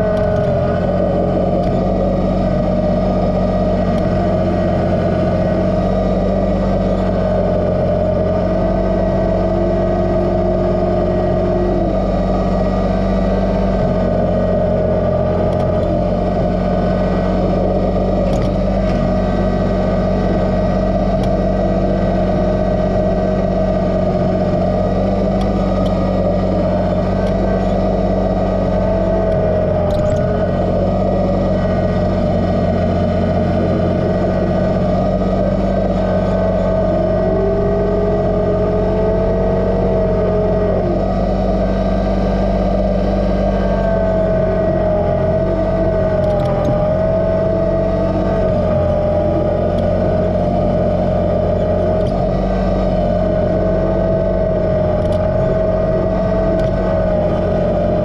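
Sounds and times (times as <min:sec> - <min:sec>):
engine whine rising and falling: 0:00.0 - 0:58.0
tractor diesel engine running: 0:00.0 - 0:58.0.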